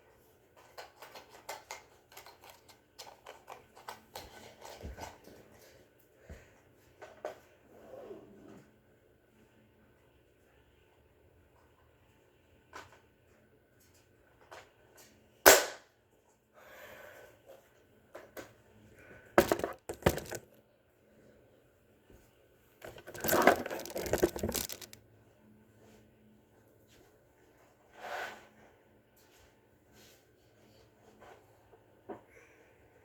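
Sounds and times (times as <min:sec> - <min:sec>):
toy blaster firing crack: 0:15.5 - 0:15.8
rattling and knocking: 0:19.4 - 0:20.4, 0:22.8 - 0:25.0
plastic clattering: 0:19.4 - 0:20.6, 0:22.8 - 0:25.0.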